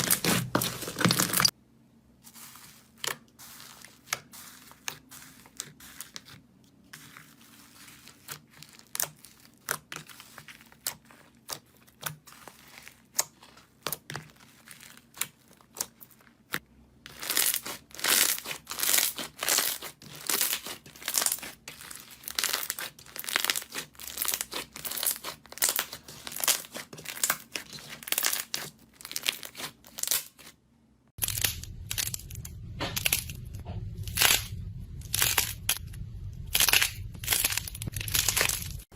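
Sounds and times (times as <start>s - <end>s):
crunchy material crackling: 0.0s - 1.6s, 31.2s - 38.9s.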